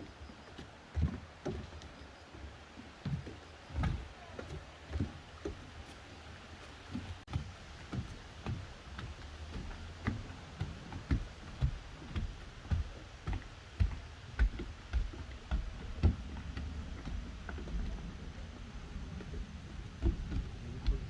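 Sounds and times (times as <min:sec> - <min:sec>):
footsteps on forest trail: 0:05.0 - 0:18.0.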